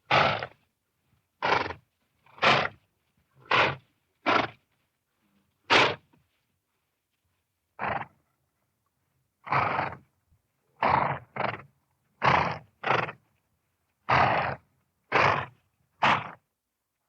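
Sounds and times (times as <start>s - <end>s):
horse vocalising in breathy bursts: 0.0s - 0.6s, 3.4s - 4.6s.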